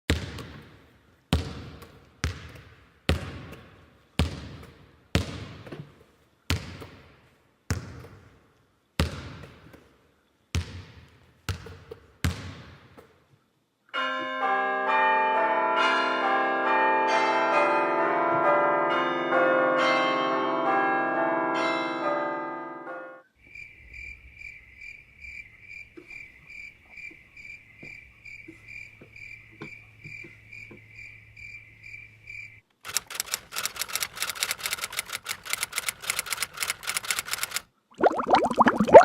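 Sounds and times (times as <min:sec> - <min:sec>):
peal of ringing bells: 0:14.0 - 0:23.1.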